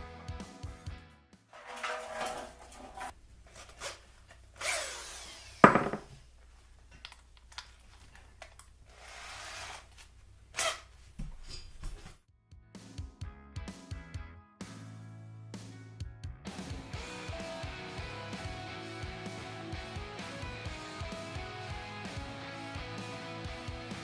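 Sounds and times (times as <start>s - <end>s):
tools scraping metal: 1.5s - 4.0s.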